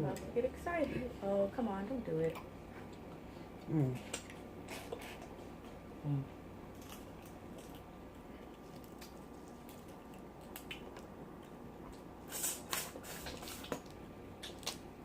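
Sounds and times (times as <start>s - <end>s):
wet squishing of eating: 2.3s - 5.8s, 6.6s - 14.9s.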